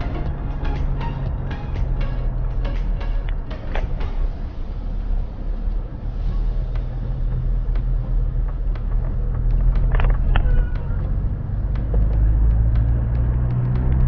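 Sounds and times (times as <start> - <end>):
vehicle engine rumble: 0.0 - 14.0
clicks and rattles: 8.7 - 11.1.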